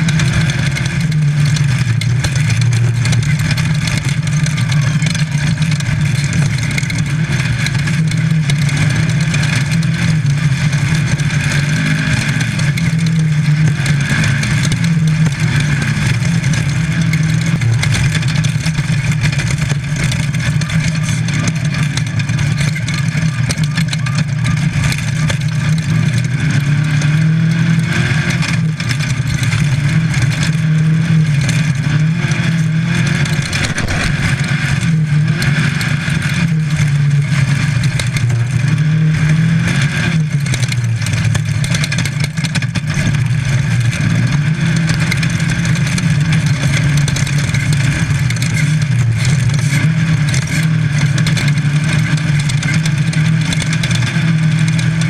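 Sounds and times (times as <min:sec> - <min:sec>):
car rattling and knocking: 0:00.0 - 0:27.8, 0:28.4 - 0:39.6
car engine revving: 0:00.0 - 0:48.4.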